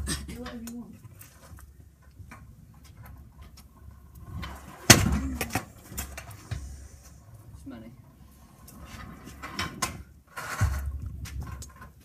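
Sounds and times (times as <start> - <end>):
scooter hitting the ground: 4.4 - 6.3.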